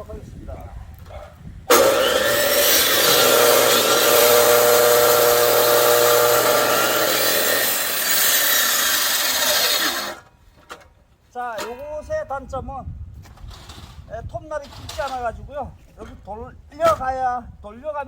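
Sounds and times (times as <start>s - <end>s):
circular saw cutting wood: 1.7s - 10.2s.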